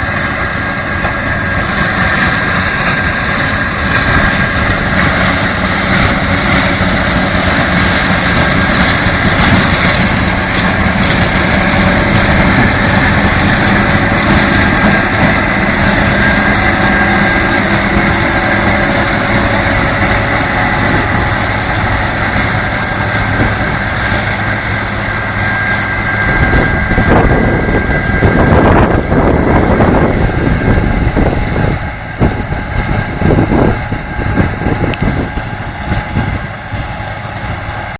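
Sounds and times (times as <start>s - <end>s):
deep engine hum: 0.0s - 37.9s
steady high whine: 0.0s - 37.9s
uneven machinery rumbling: 0.0s - 37.9s.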